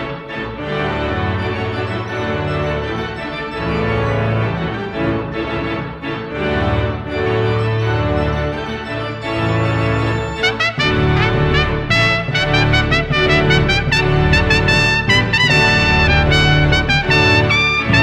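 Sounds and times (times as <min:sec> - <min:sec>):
organ-like chords: 0:03.6 - 0:18.0
low moving bass line: 0:10.8 - 0:18.0.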